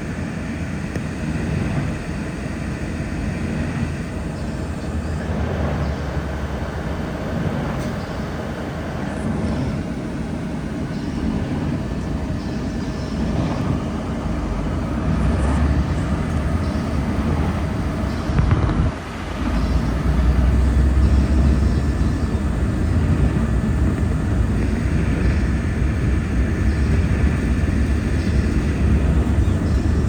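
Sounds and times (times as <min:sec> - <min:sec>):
car driving on wet road: 0:13.4 - 0:30.0.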